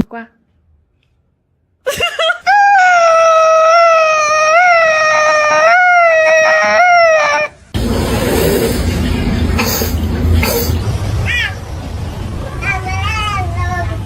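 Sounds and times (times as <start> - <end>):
dog howling: 2.8 - 7.6
steady noisy rumble: 7.6 - 14.0.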